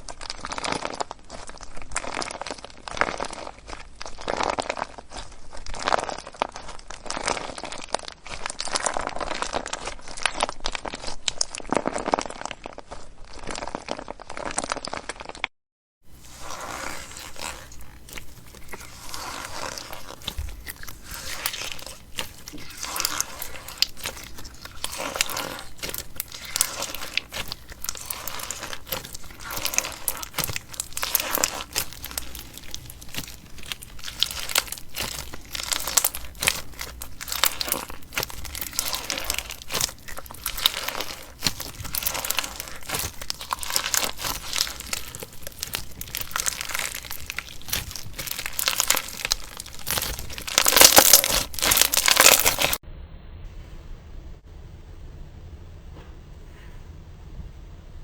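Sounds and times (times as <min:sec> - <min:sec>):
slime crackling and popping: 0:00.0 - 0:15.5, 0:16.1 - 0:52.8.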